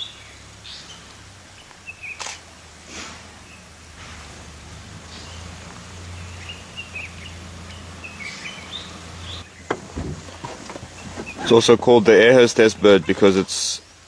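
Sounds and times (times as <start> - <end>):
low outdoor rumble: 0.0 - 14.0
soft knocks: 9.6 - 11.5.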